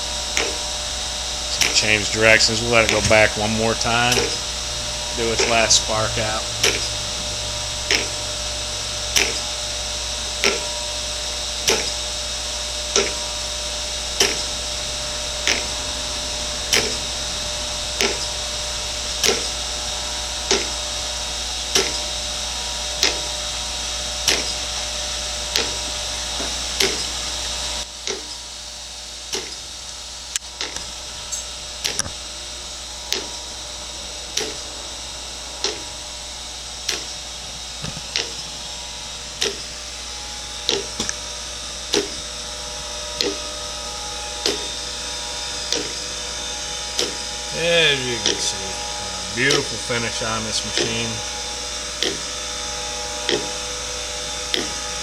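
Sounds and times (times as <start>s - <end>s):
sharp machine clicks: 0.0s - 24.7s, 39.4s - 53.8s
surface grinder humming: 0.0s - 27.8s, 30.3s - 55.0s.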